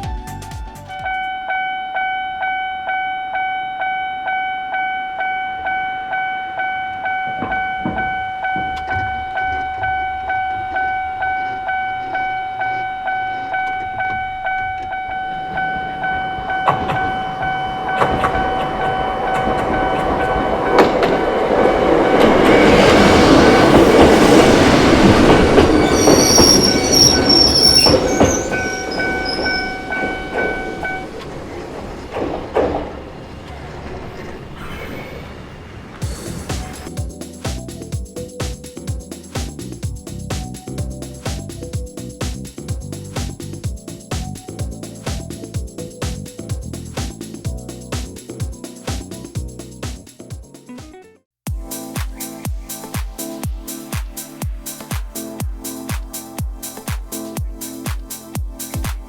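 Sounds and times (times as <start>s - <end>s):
train passing: 0.8s - 49.8s
level crossing bell dinging: 1.0s - 21.0s
wheels squealing: 4.4s - 37.0s.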